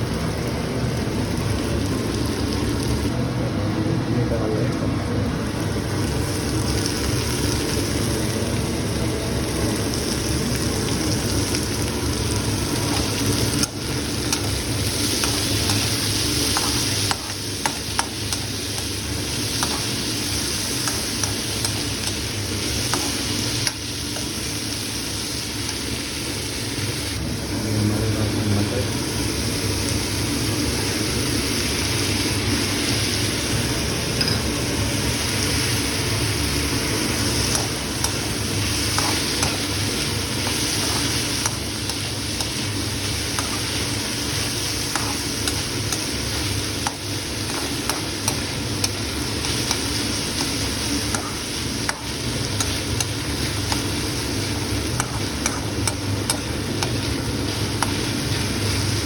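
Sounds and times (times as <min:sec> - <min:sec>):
food sizzling in a pan: 0:05.6 - 0:59.0
spatula clicking against pan: 0:46.8 - 0:49.8, 0:55.0 - 0:57.0.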